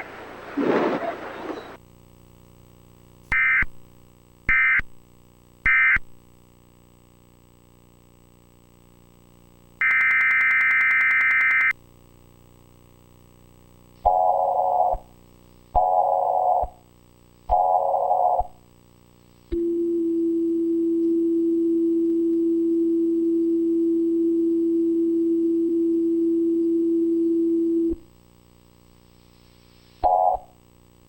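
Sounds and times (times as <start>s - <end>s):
steady low alert tone: 19.6s - 28.0s.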